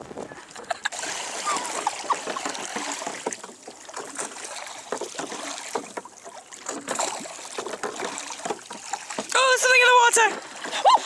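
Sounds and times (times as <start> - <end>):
water splashing around boat: 0.0 - 11.0
water drips: 7.4 - 10.9.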